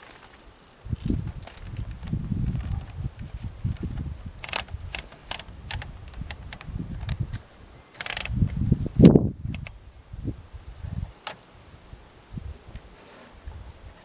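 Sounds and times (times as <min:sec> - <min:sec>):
typewriter keys clacking: 0:04.4 - 0:06.6, 0:08.0 - 0:08.3
typewriter mechanical clatter: 0:04.4 - 0:06.7, 0:07.9 - 0:08.4.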